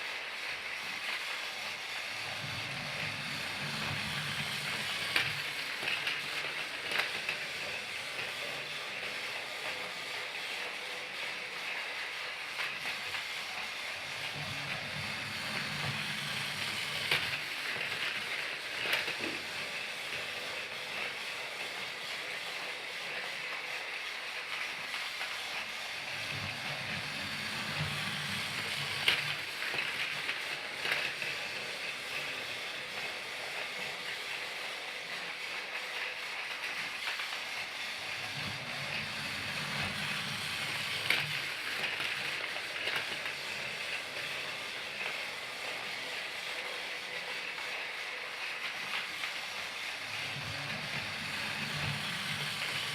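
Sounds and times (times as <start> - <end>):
toy train whirring on track: 0.0 - 52.9.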